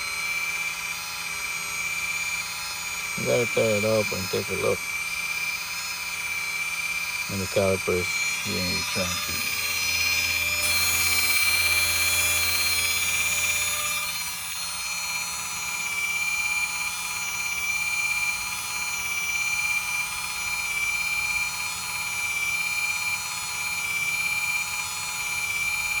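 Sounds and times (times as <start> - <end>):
electric motor high whine: 0.0 - 26.0.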